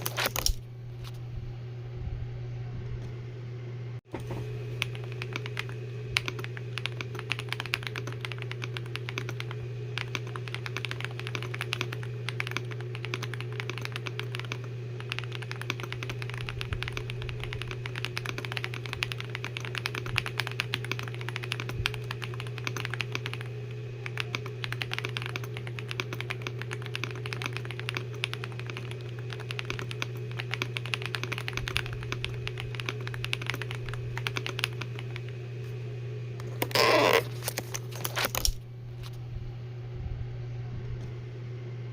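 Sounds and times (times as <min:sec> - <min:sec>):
steady low hum: 0:00.0 - 0:41.9
fast typing on mechanical keyboard: 0:04.8 - 0:35.3.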